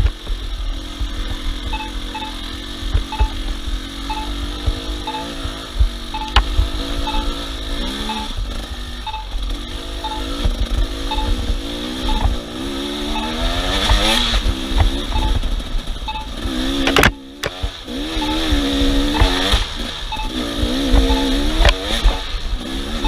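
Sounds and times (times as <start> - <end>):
engine revving: 0.0 - 23.0
short high beeps: 1.7 - 2.4, 3.1 - 8.4, 9.0 - 9.4, 10.0 - 10.4, 11.0 - 12.4, 13.0 - 14.2, 15.1 - 15.4, 16.0 - 17.3, 18.1 - 19.4, 20.1 - 21.7.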